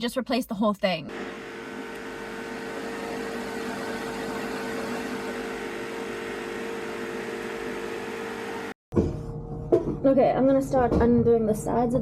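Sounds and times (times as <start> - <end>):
machine hum with steady tone: 1.1 - 8.8.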